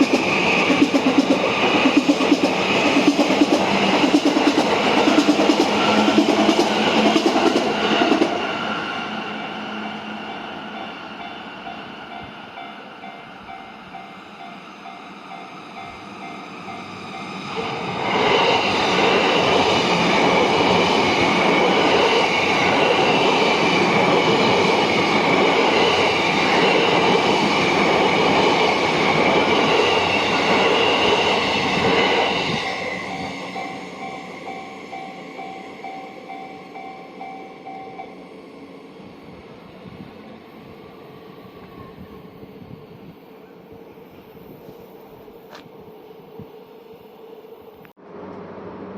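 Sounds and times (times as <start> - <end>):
train wheels rumbling on rails: 0.0 - 46.5
crossing warning tone: 5.8 - 40.1.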